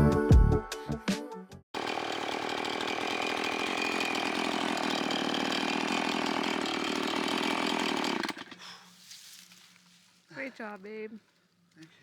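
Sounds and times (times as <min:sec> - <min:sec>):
small gas engine rattling: 0:01.8 - 0:08.9.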